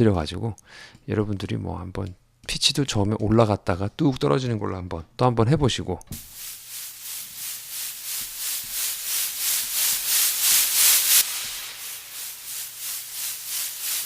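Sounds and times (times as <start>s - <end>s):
pulsing white noise sweep: 6.5s - 14.0s.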